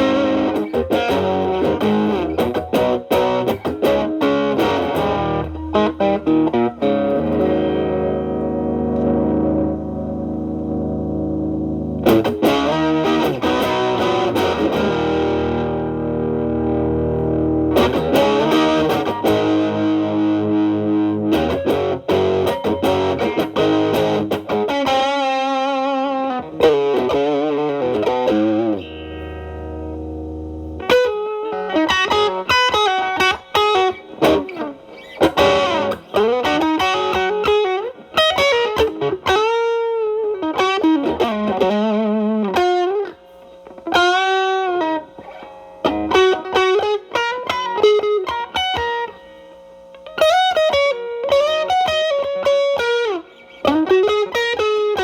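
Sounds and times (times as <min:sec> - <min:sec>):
low amp hum: 0:00.0 - 0:47.1
distorted electric guitar: 0:00.0 - 0:55.0.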